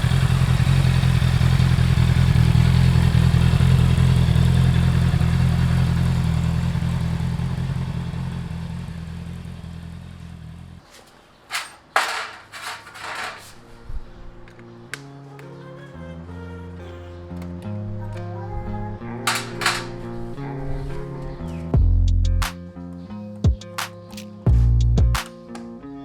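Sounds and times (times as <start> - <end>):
motorcycle engine idling: 0.0 - 10.8.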